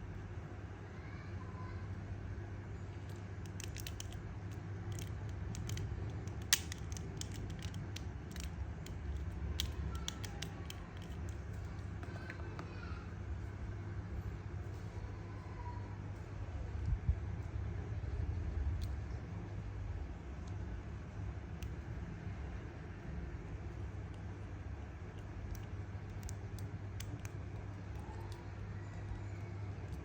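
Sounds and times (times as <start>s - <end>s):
steady low hum: 0.0s - 30.0s
plastic parts clicking and tapping: 3.1s - 12.4s.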